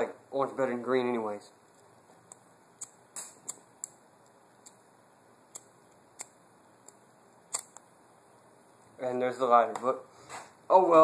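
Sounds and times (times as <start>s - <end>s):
lighter clicking: 5.5s - 7.9s.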